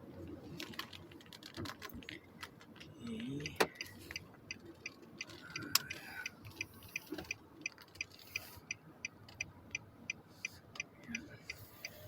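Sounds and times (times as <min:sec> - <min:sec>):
low road noise inside car: 0:00.0 - 0:12.0
car turn signal clicking: 0:03.4 - 0:12.0.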